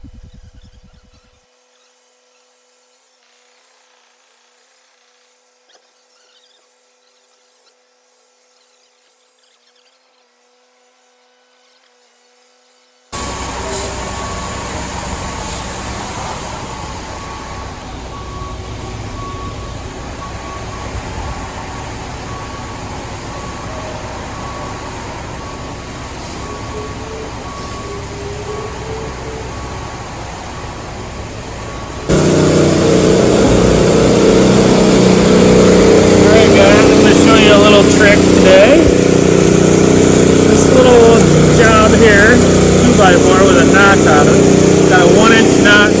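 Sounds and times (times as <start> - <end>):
heavy machinery engine running: 13.2 - 46.0.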